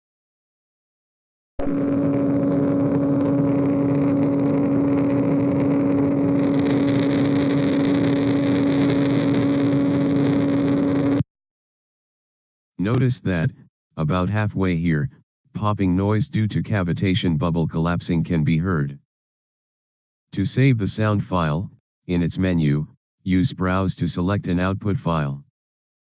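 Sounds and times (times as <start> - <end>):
fast crackling pops: 1.6 - 11.2
two-tone hum: 1.6 - 11.2.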